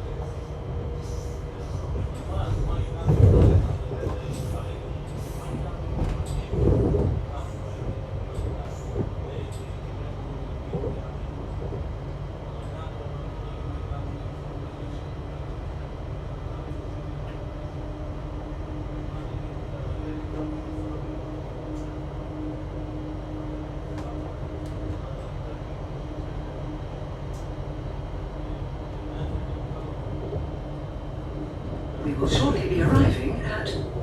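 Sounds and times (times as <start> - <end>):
electric train rumble: 0.0 - 34.0.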